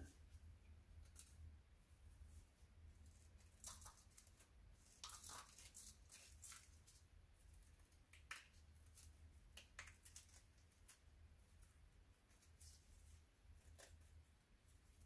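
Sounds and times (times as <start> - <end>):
scratches and clicks of clay plug: 3.0 - 11.7, 13.6 - 14.2.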